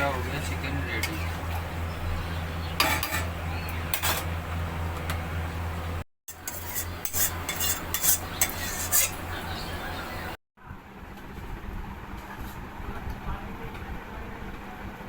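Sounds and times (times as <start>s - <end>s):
metal spoon scraping a pan: 2.8s - 4.3s, 6.3s - 9.6s.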